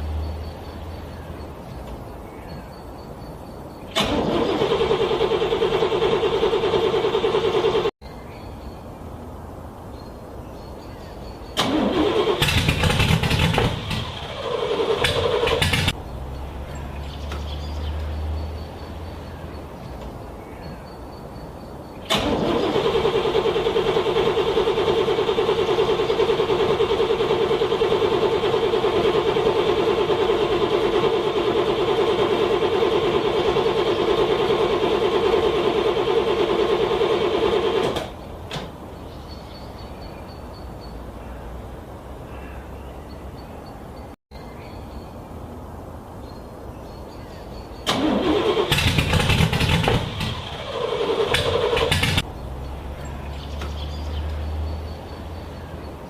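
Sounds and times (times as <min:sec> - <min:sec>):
car starter motor cranking: 0:03.9 - 0:07.9, 0:11.6 - 0:16.0, 0:22.0 - 0:38.7, 0:47.8 - 0:52.3.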